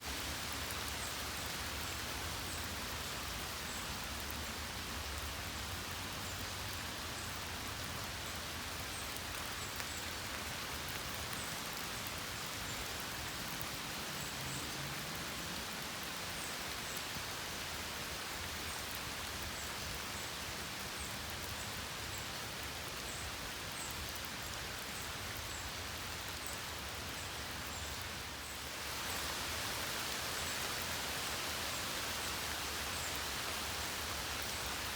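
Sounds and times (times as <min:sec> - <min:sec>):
steady rain: 0:00.0 - 0:34.9.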